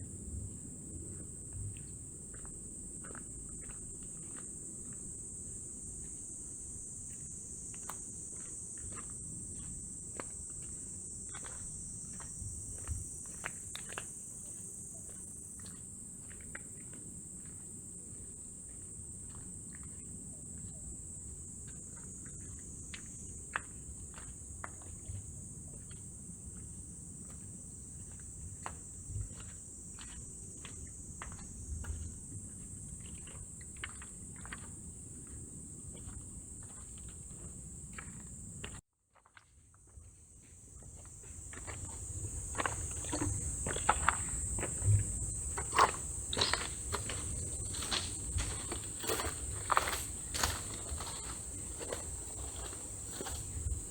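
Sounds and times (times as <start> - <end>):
footsteps on pavement: 41.3 - 53.9
insects shrilling: 41.9 - 53.9.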